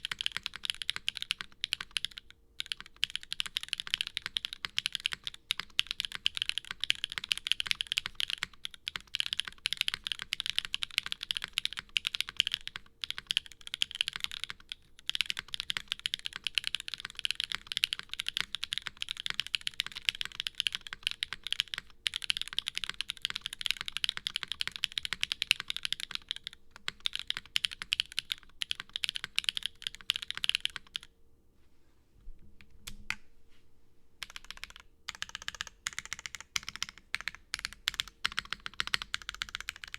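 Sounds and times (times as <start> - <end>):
mechanical keyboard typing: 0.0 - 31.1, 34.2 - 39.9
faint steady hum: 0.0 - 39.9.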